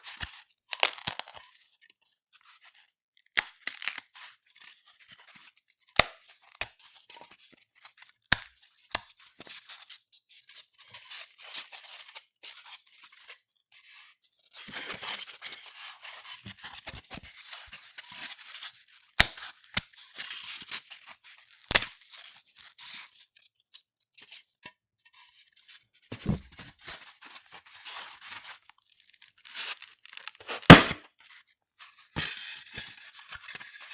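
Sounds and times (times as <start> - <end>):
styrofoam crackling: 30.4 - 31.0
styrofoam snapping: 30.4 - 31.0.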